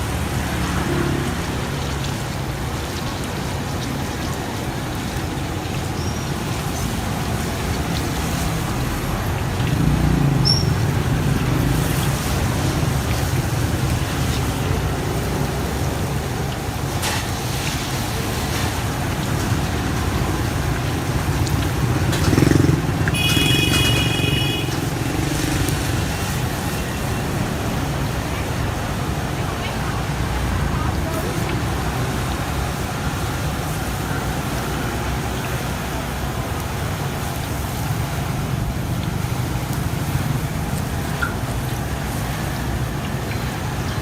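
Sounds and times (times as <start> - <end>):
busy street traffic: 0.0 - 44.0
motorbikes passing: 0.0 - 44.0
vehicle horn: 23.1 - 24.8.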